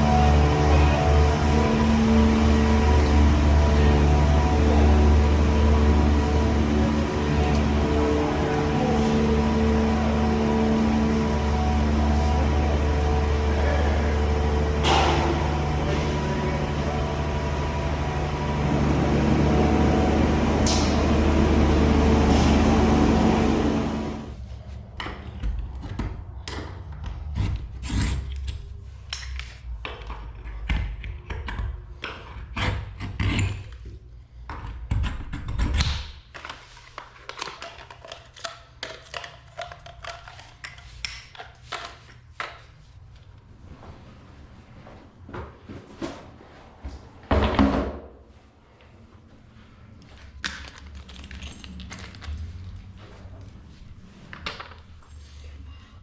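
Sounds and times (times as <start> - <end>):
loud machine hum: 0.0 - 24.4
tools clicking and knocking: 25.0 - 42.7.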